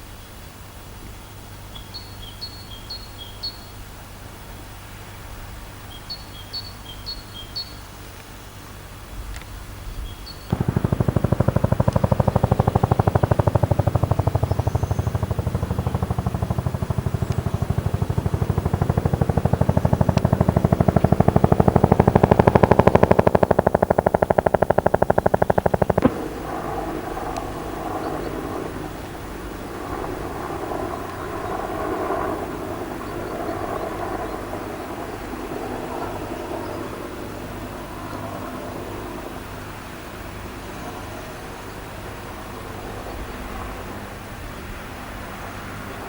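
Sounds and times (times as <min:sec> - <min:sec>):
birds chirping: 0:10.0 - 0:32.4
construction machinery pounding: 0:10.5 - 0:28.7
engine running: 0:10.5 - 0:35.8.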